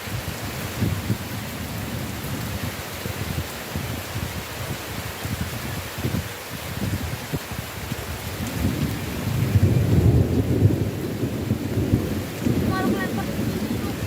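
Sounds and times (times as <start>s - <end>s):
heavy rain falling: 0.0s - 14.0s
rolling thunder rumble: 8.1s - 14.0s.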